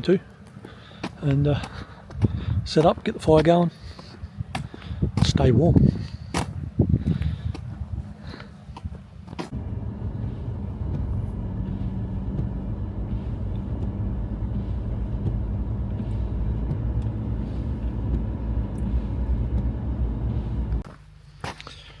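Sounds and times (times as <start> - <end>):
vehicle engine rumble and road noise: 0.0 - 22.0.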